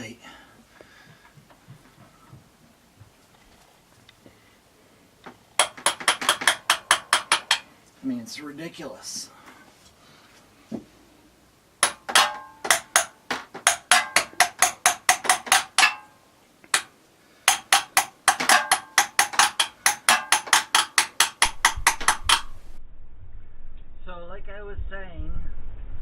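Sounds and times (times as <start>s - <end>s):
hammer on metal: 5.6s - 7.7s, 11.8s - 22.7s.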